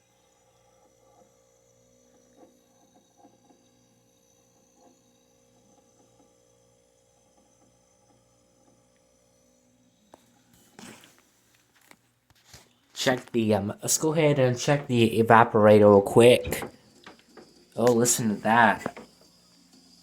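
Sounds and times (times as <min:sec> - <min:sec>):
refrigerator compressor humming: 0:13.0 - 0:20.0.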